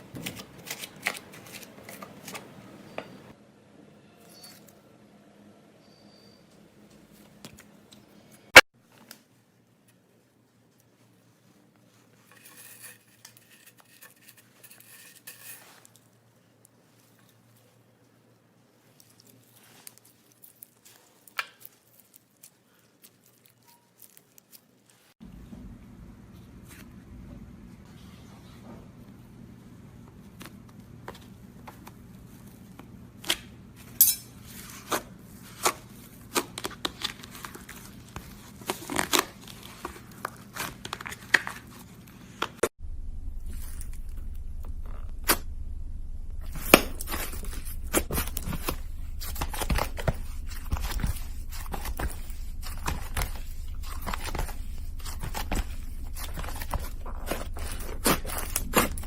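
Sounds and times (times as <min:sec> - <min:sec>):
slime squishing and crackling: 0:18.8 - 0:25.1, 0:46.4 - 0:59.0
steady low hum: 0:42.8 - 0:59.0.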